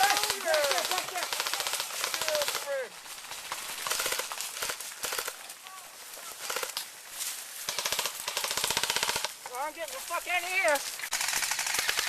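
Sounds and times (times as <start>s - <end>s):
airsoft guns firing full-auto: 0.0s - 5.4s, 6.4s - 6.8s, 7.7s - 9.4s, 11.1s - 12.0s.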